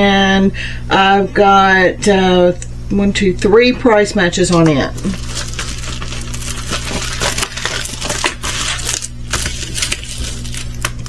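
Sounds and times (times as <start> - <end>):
plastic packaging crinkling: 4.4 - 11.0.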